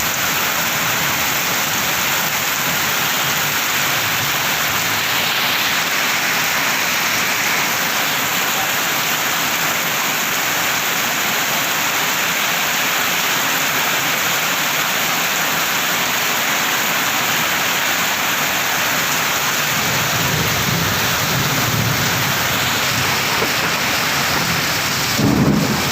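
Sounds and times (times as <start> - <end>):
heavy rain: 0.0 - 25.9
thunder rumbling: 19.6 - 25.9.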